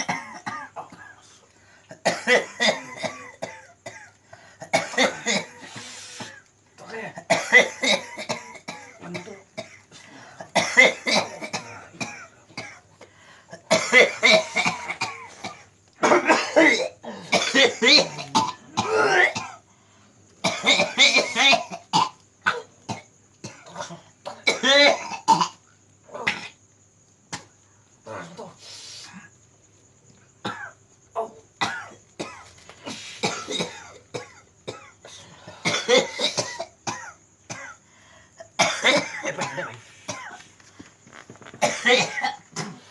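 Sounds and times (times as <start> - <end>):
man coughing: 2.0 - 6.4, 7.0 - 9.8, 10.4 - 12.8, 13.6 - 19.6, 20.5 - 25.6, 31.6 - 37.8, 38.6 - 40.4, 41.6 - 42.9.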